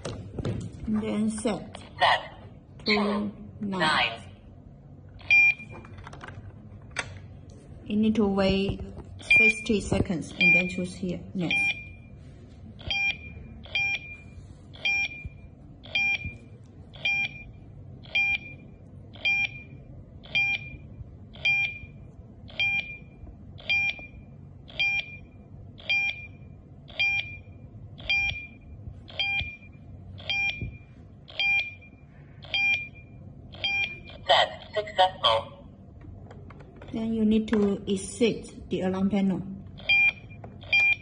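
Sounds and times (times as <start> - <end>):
alarm panel high beeps: 9.2 - 12.1, 39.8 - 41.0.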